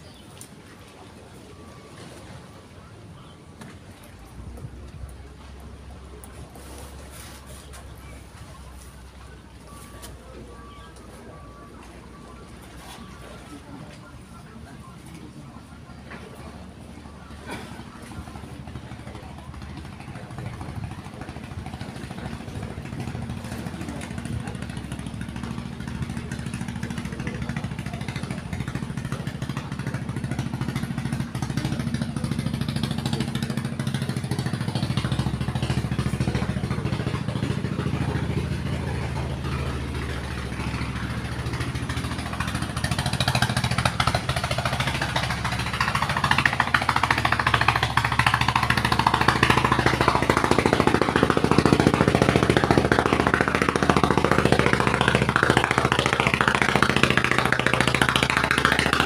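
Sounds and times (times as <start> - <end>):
small engine running: 16.7 - 59.0.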